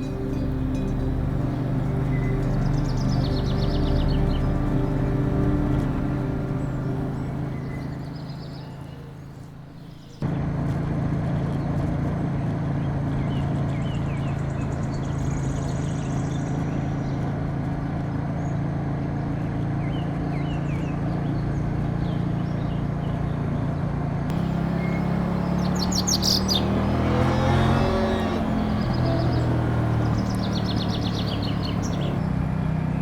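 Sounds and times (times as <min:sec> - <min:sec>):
motorcycle engine running: 0:00.0 - 0:21.9, 0:24.3 - 0:32.2
faint bird chirps: 0:24.3 - 0:32.2.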